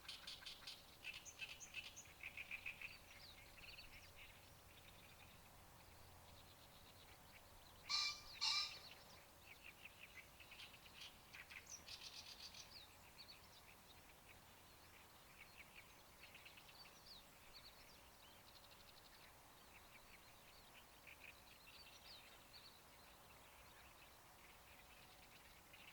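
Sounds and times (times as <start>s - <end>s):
scratchy bird chattering: 7.9s - 8.8s
bird calls: 7.9s - 9.2s.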